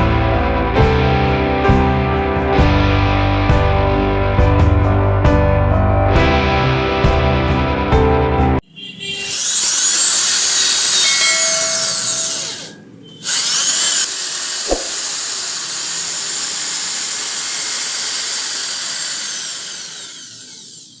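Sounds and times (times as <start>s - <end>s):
electric drill motor whining: 9.0s - 21.0s
short knock: 14.7s - 15.0s.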